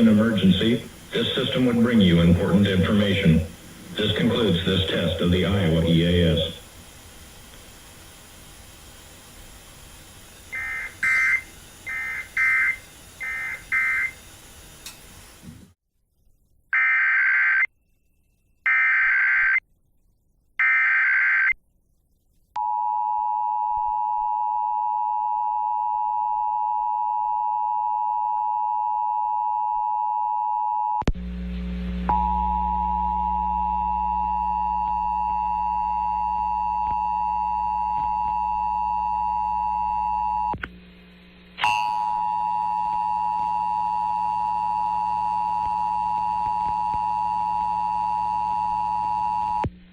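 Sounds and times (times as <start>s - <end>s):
low hum: 0.0s - 13.6s, 31.1s - 49.9s
warbling data tone bursts: 10.5s - 14.2s
two-tone alarm signal: 10.6s - 14.2s, 41.6s - 49.6s
click: 14.8s - 15.0s.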